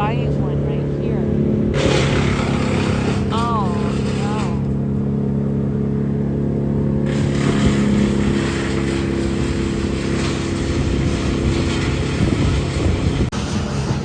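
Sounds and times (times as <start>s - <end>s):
small engine running: 0.0s - 14.0s.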